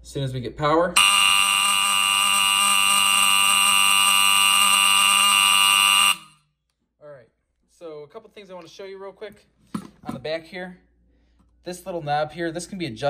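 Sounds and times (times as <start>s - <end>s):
fire alarm horn buzzing: 1.0s - 6.5s.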